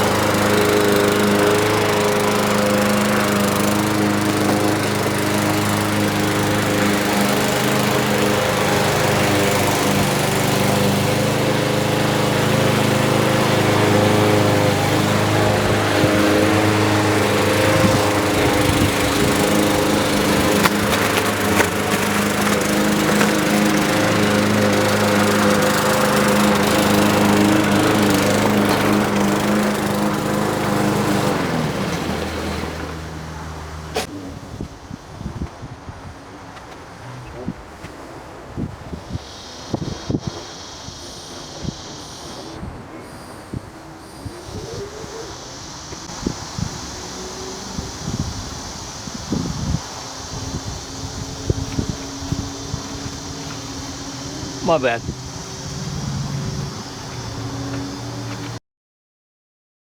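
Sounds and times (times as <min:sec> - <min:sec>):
lawn mower engine running: 0:00.0 - 0:58.6.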